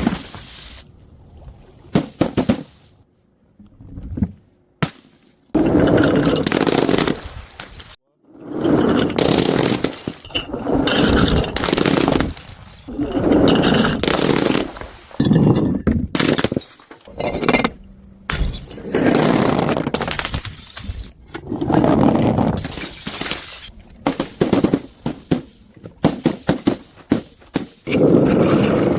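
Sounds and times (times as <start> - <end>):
glass bottles shattering: 8.6 - 19.3, 20.0 - 21.1, 22.6 - 28.0.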